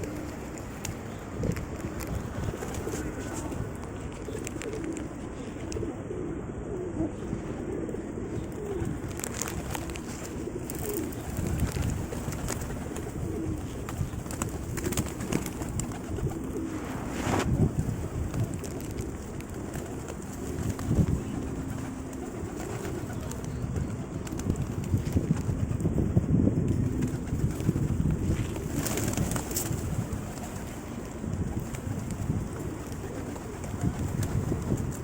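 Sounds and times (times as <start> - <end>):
pigeons cooing: 0.0 - 16.9, 17.5 - 24.2.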